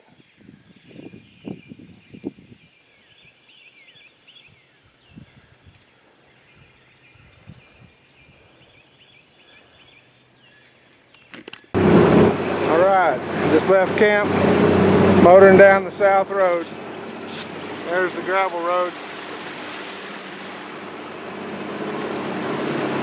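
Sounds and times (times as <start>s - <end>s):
birds chirping and whistling: 0.1s - 11.7s.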